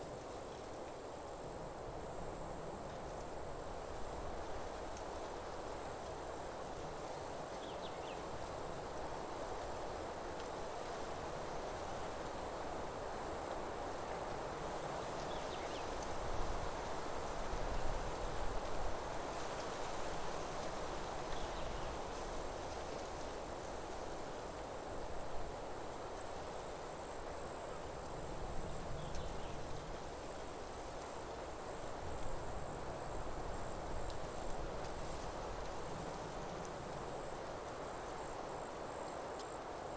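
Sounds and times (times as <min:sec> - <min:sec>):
soft rushing hiss: 0:00.0 - 0:39.9
insects trilling: 0:10.6 - 0:39.9.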